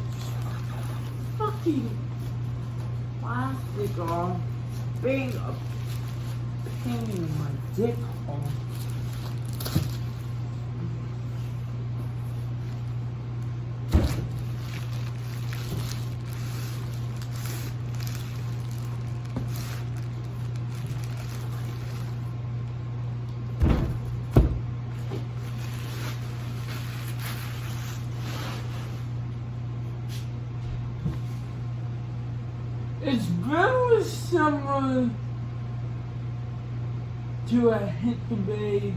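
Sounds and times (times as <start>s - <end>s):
steady low hum: 0.0s - 38.9s
knocks while unpacking: 23.6s - 25.3s.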